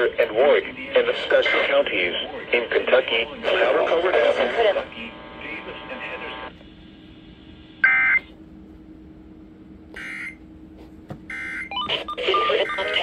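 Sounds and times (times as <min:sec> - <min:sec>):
broadcast audio: 0:00.0 - 0:08.3, 0:11.8 - 0:13.0
faint steady hum: 0:00.0 - 0:13.0.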